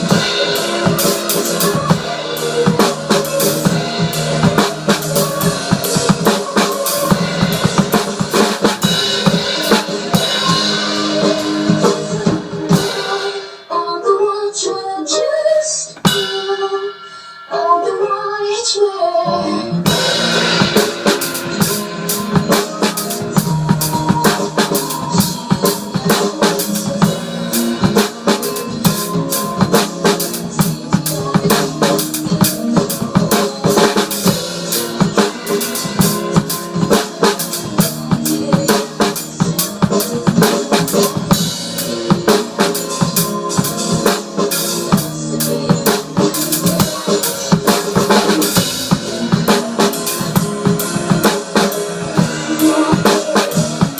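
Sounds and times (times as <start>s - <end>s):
drum kit playing: 0.0s - 13.8s, 15.9s - 17.1s, 19.2s - 53.9s.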